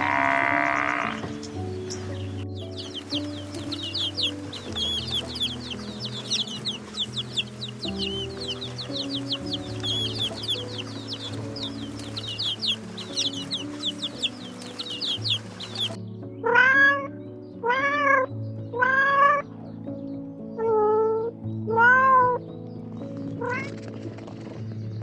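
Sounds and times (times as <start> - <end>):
chickens clucking: 0.0 - 16.0
soft background music: 0.0 - 25.0.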